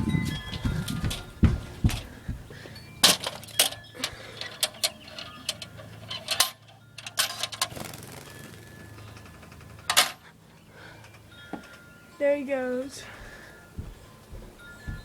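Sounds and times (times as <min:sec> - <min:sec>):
metal trap rattling and clanking: 0:03.0 - 0:07.8, 0:08.6 - 0:10.3.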